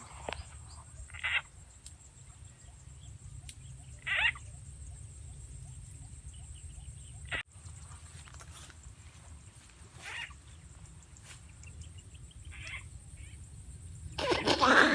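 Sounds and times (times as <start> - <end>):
frog calling: 0.2 - 2.4, 3.8 - 4.6, 12.5 - 13.4, 14.2 - 14.9.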